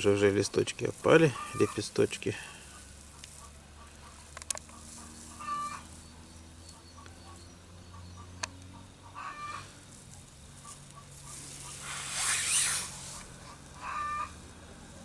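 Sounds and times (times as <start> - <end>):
hen clucking: 0.5 - 5.9, 6.8 - 9.7, 13.8 - 14.4
burst of hissing noise: 11.4 - 13.4.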